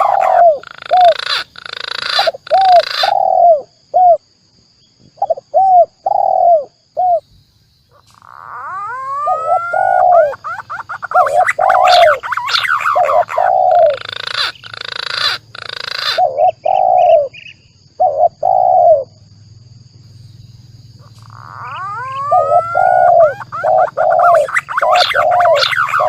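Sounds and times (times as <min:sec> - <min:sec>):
harsh rasping call: 0:00.0 - 0:03.2, 0:08.2 - 0:16.3, 0:21.0 - 0:26.0
pigeon whistled calls: 0:00.0 - 0:03.6, 0:08.4 - 0:17.3, 0:21.0 - 0:26.0
dove cooing: 0:00.0 - 0:04.2, 0:05.2 - 0:07.2, 0:07.9 - 0:17.4, 0:18.0 - 0:19.2, 0:21.0 - 0:26.0.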